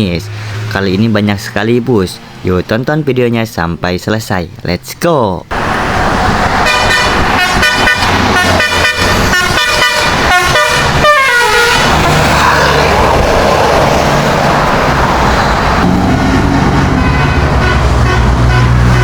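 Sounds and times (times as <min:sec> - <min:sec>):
bus engine rumbling: 0:00.0 - 0:19.0
musical bus air horn: 0:06.6 - 0:12.0, 0:16.8 - 0:19.0.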